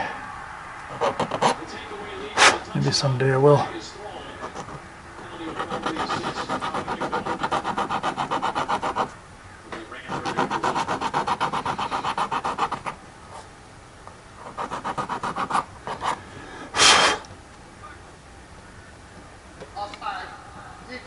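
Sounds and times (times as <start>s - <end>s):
small file rasping on metal: 5.5s - 9.1s.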